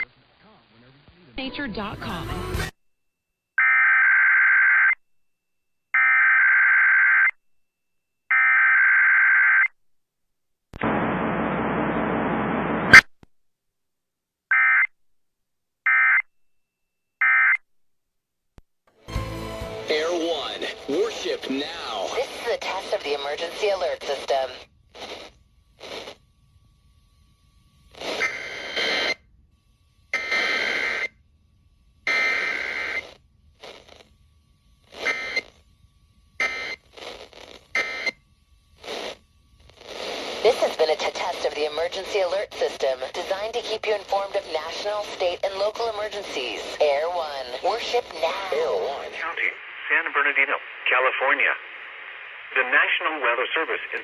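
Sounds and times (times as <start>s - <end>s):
buzzy digital data tones: 19.3s - 49.6s
digital data tones: 30.1s - 31.2s, 32.0s - 35.7s, 36.4s - 38.3s.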